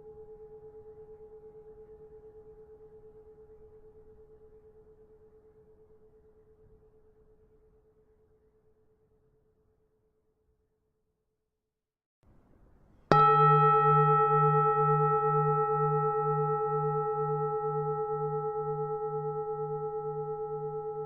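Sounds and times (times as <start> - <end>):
temple bell ringing: 13.1 - 21.0.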